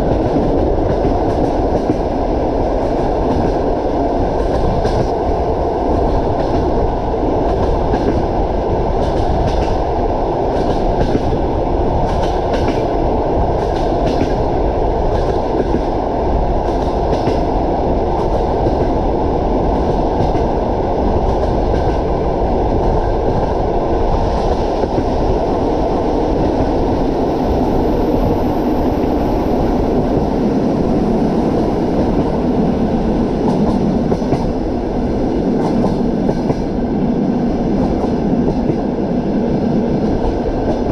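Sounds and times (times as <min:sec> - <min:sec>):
train wheels rumbling on rails: 0:00.0 - 0:40.9.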